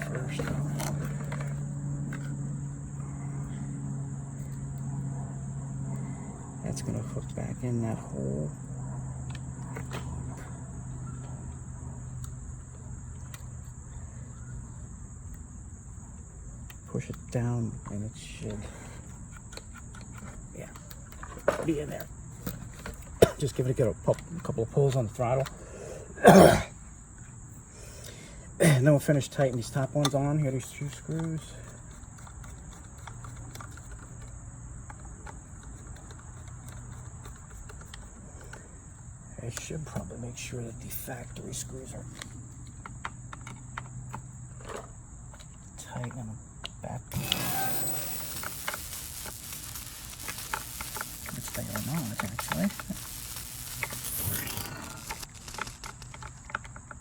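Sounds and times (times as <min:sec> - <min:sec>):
low hum: 0:47.1 - 0:56.3
high-pitched hiss: 0:47.1 - 0:56.4
high thin whine: 0:47.1 - 0:56.5
screws clicking: 0:47.1 - 0:56.6.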